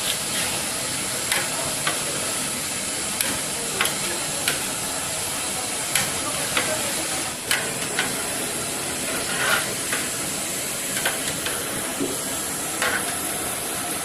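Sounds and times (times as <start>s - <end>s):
curry sizzling in a pot: 0.0s - 14.0s.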